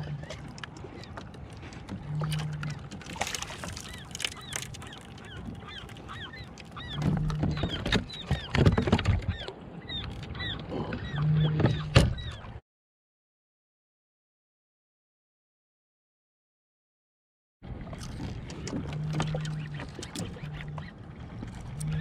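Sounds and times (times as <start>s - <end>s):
bird squawking: 3.9s - 8.6s.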